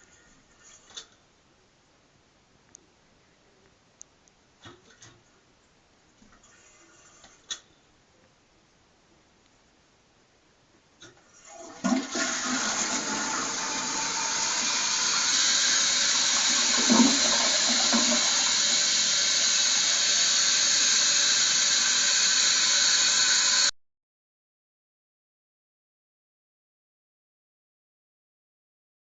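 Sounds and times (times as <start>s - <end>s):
toilet flushing water rushing: 11.2s - 23.7s.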